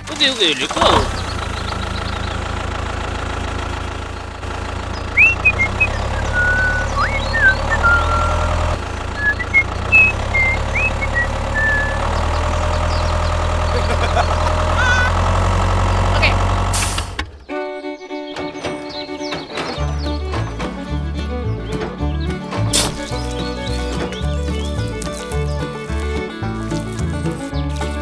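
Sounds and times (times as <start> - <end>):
small motors humming: 4.4 - 21.8, 22.8 - 28.0
whistled chirps: 5.0 - 13.8.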